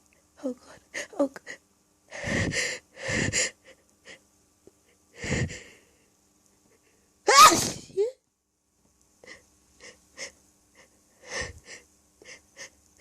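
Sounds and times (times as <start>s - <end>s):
sneeze: 7.3s - 8.1s.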